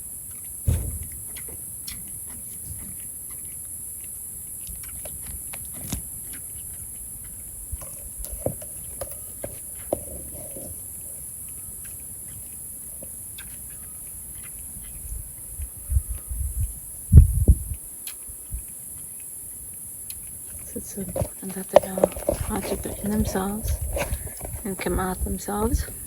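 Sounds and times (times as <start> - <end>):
monkeys moving clicks and knocks: 20.5 - 26.0.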